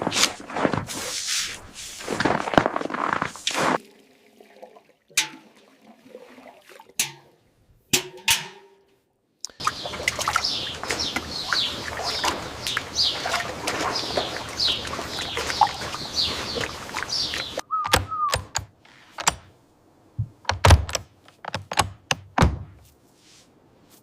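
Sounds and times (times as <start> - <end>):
birds chirping: 9.5 - 18.6.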